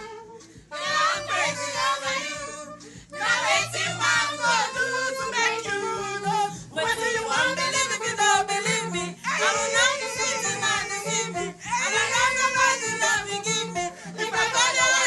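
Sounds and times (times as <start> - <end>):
backing track with bass line: 0.0 - 15.0
saxophone melody: 0.0 - 15.0.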